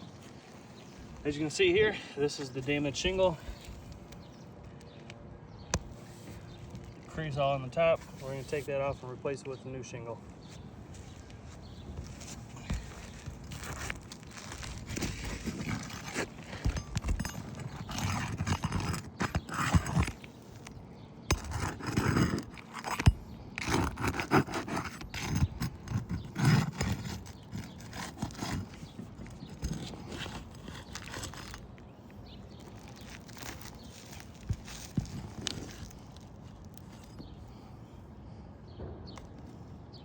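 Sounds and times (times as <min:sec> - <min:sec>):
scraping on shingle roof: 0:10.4 - 0:37.7.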